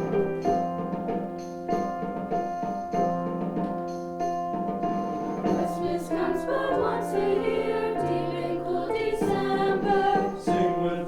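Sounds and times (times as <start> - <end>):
choir singing: 5.1 - 11.0.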